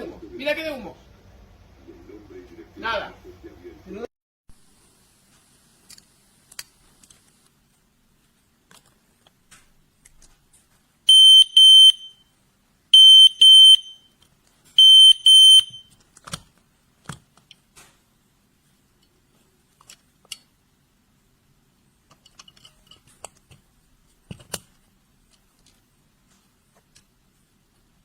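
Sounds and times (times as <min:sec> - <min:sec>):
smoke alarm beeping: 0:11.1 - 0:12.2, 0:13.0 - 0:14.1, 0:14.8 - 0:15.9.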